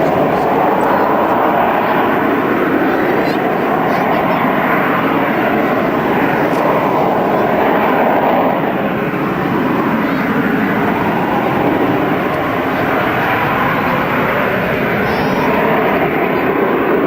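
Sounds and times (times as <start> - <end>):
loud jet engine noise: 0.0 - 17.0.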